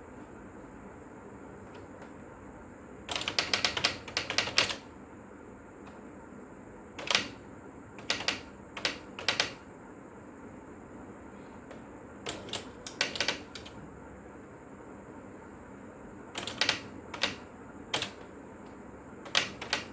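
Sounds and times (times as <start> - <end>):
steady background hum: 0.0 - 19.9
electric typewriter clicks: 3.1 - 4.9, 7.0 - 7.4, 8.0 - 9.6, 12.2 - 13.8, 16.4 - 18.3, 19.2 - 19.9.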